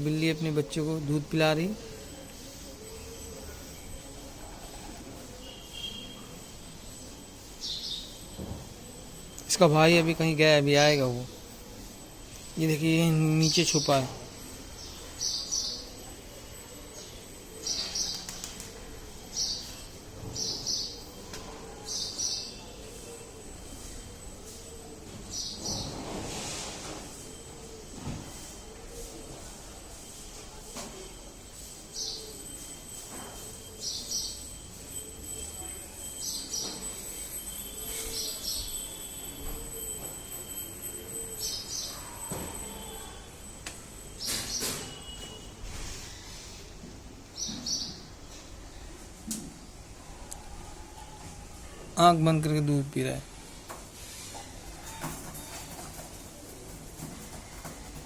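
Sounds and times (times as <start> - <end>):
faint high-pitched tone: 0.0 - 45.9.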